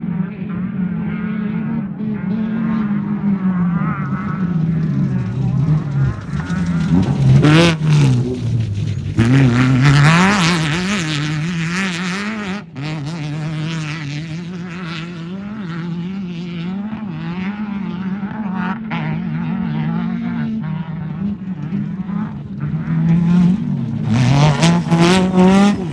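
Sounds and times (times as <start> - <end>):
race car engine revving: 0.0 - 25.9.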